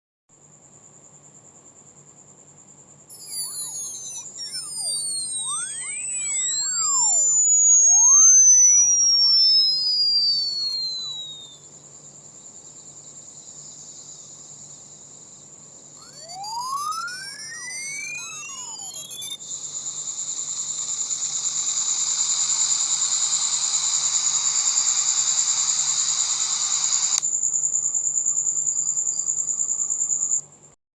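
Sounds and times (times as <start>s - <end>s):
tones gliding up and down: 3.1s - 14.0s, 16.0s - 19.4s
high-pitched pulsing trill: 3.1s - 14.7s, 15.9s - 27.2s
harsh buzzing hiss: 3.1s - 27.3s.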